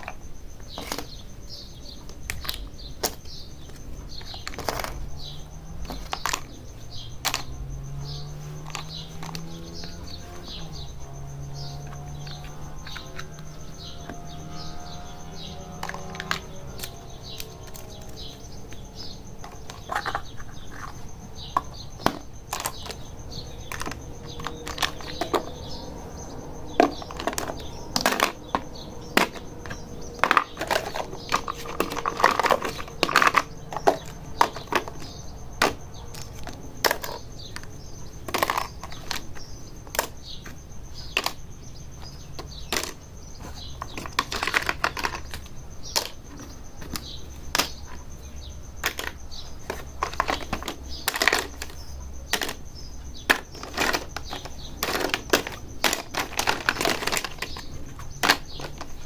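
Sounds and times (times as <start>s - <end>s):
toy kitchen pieces clicking: 48.8s - 59.0s.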